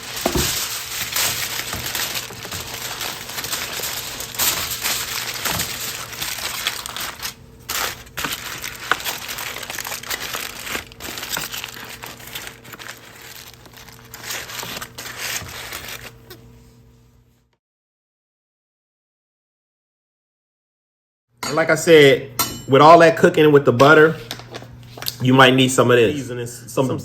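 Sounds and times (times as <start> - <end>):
aluminium foil crinkling: 0.0 - 16.5.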